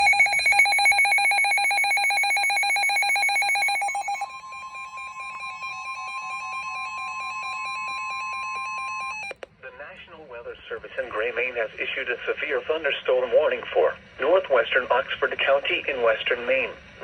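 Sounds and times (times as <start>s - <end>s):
pulsing electronic data signal: 0.0s - 9.3s
steady warning alarm tone: 0.0s - 9.4s.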